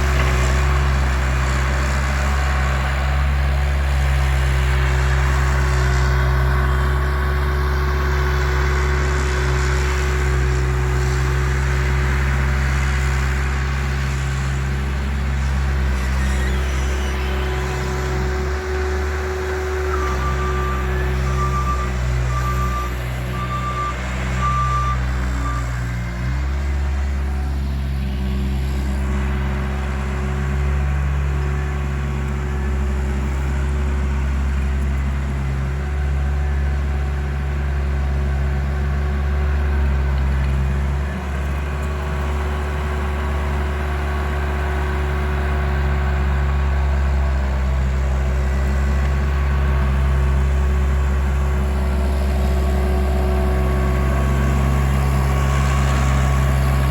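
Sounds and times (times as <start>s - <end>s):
loader engine running: 0.0s - 56.9s
reversing alarm beeping: 16.2s - 25.9s.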